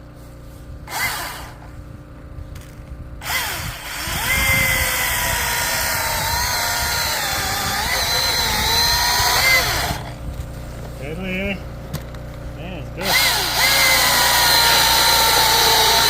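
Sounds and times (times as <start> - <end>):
chainsaw motor electric whine: 0.8 - 10.5, 13.0 - 16.0.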